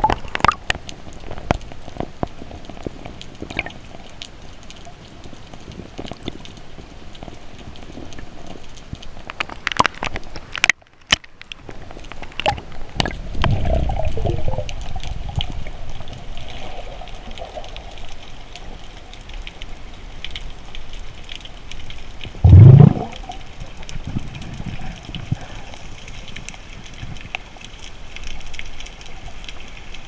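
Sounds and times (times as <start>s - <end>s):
water sloshing and gushing: 11.6s - 30.0s.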